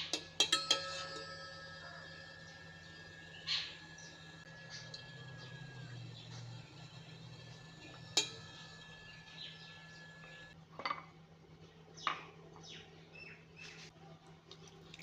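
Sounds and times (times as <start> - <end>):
utensils clinking against a pot: 0.0 - 9.3.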